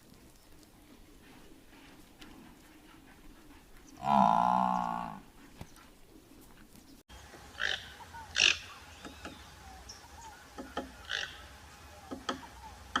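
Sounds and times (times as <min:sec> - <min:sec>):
clicks and grunts: 0:04.0 - 0:05.2.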